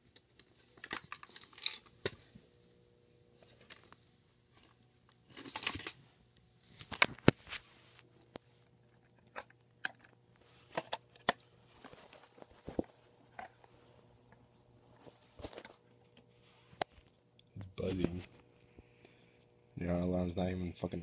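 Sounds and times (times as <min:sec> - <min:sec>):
faint low hum: 0:00.0 - 0:21.0
rustling scrape: 0:06.6 - 0:08.6, 0:16.4 - 0:16.8.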